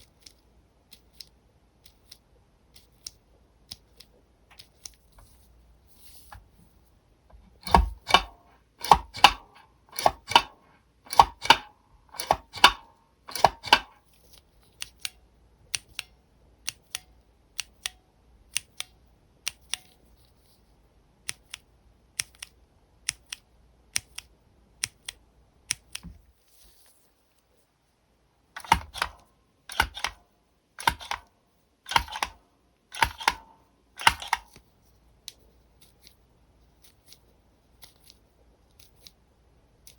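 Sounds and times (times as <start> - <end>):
giant keyboard switch clacking: 7.5 - 14.0, 28.6 - 30.2, 30.8 - 31.3, 31.9 - 34.6
keyboard switch clicking: 7.5 - 14.0, 28.6 - 30.2, 30.8 - 31.3, 31.9 - 34.6.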